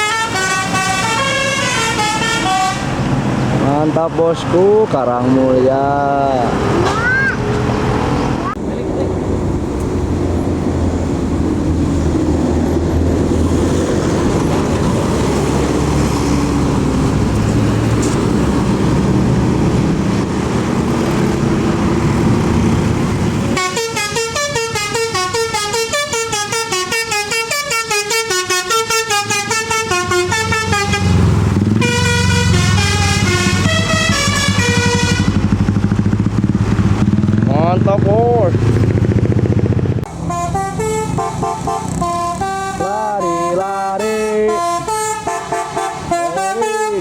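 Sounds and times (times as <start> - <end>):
multi-tone horn playing tune: 0.0 - 3.0, 23.6 - 31.2, 31.8 - 35.4, 40.1 - 47.0
bus engine running: 0.0 - 47.0
road noise: 0.0 - 47.0.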